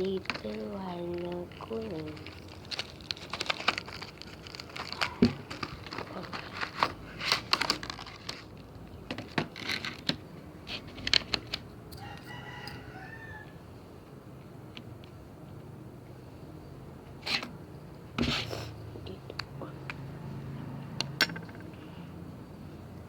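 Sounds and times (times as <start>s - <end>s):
rooster crowing: 11.9s - 13.7s.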